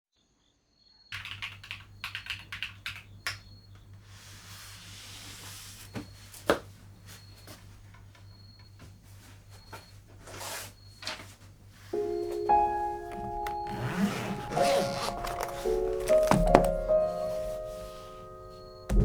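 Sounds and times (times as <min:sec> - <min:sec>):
mechanical keyboard clicks: 0:01.2 - 0:03.6
soft rustle: 0:09.1 - 0:18.8.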